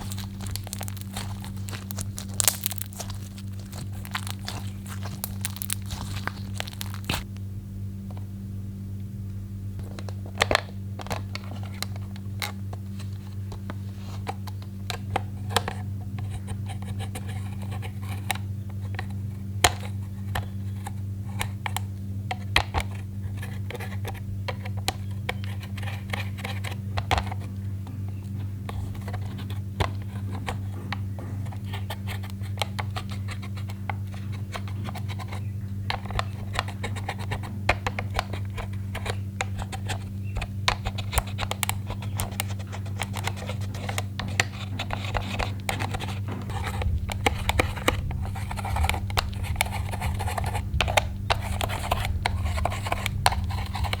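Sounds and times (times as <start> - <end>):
slime clicking and popping: 0.0 - 7.3
steady low hum: 0.0 - 54.0.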